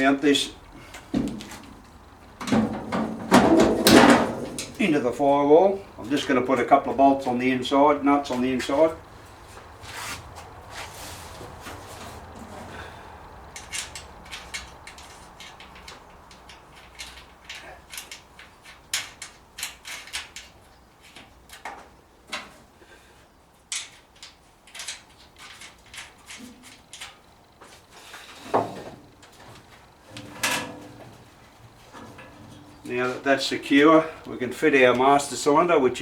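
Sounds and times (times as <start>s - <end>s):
metal tools clicking and clinking: 13.4s - 21.7s.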